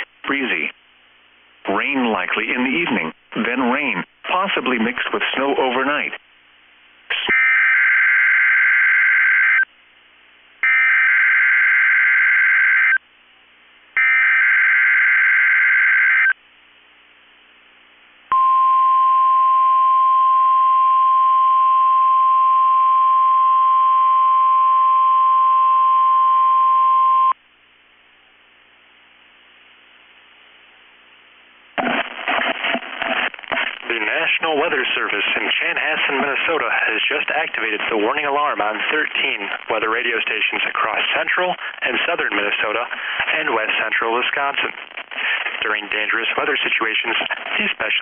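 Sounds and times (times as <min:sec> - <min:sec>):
faint radio hiss: 0:00.0 - 0:07.5, 0:09.4 - 0:10.8, 0:12.8 - 0:14.0, 0:16.2 - 0:18.4, 0:27.4 - 0:48.0
steady warning alarm tone: 0:10.6 - 0:13.0, 0:14.0 - 0:16.4.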